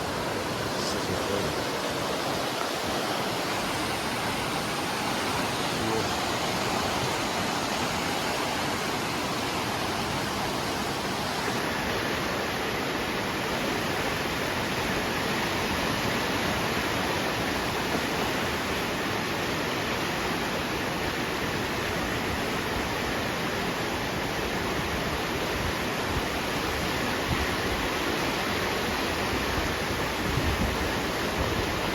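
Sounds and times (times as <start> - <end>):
river rushing: 0.0 - 31.9.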